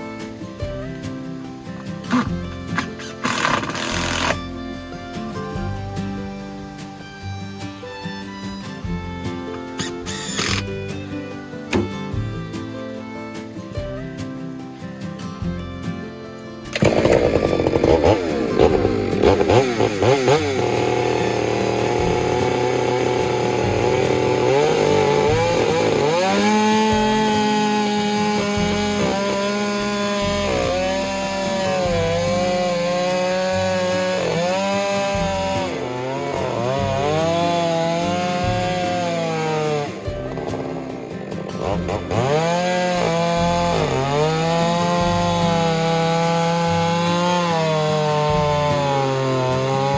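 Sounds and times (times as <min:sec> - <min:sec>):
chainsaw cutting log: 0:02.1 - 0:05.8, 0:09.5 - 0:10.8, 0:11.7 - 0:12.0, 0:16.7 - 0:49.9.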